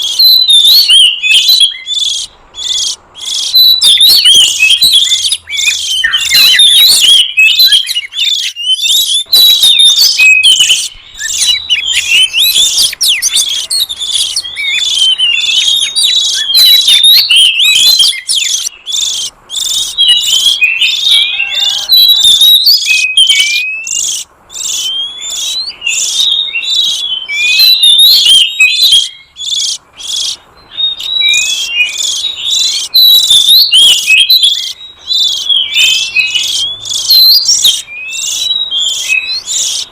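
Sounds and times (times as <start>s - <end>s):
bird chattering and whistling: 0.0s - 39.9s.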